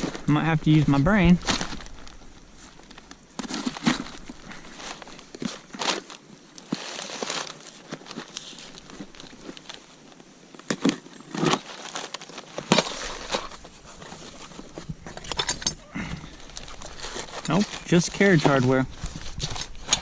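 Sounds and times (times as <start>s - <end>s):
cardboard packaging crinkling: 1.3s - 15.4s.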